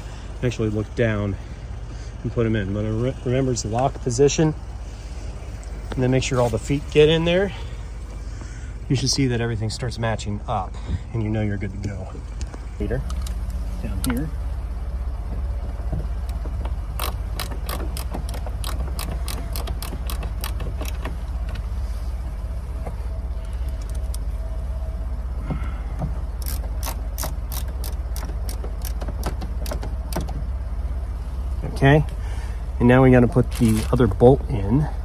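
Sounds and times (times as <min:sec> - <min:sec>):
ratcheting driver clicking: 0:16.2 - 0:21.6, 0:26.4 - 0:30.4.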